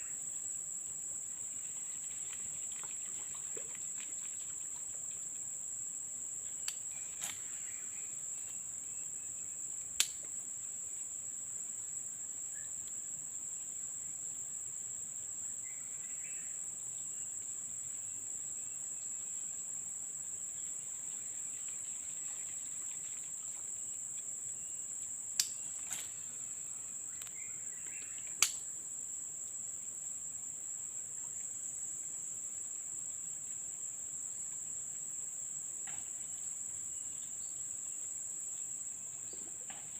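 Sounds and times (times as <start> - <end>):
high-pitched insect chorus: 0.0 - 39.9.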